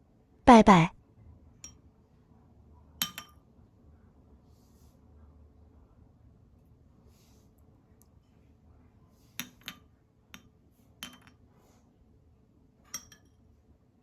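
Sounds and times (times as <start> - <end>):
kitchenware clinking: 3.0 - 3.4, 12.9 - 13.3.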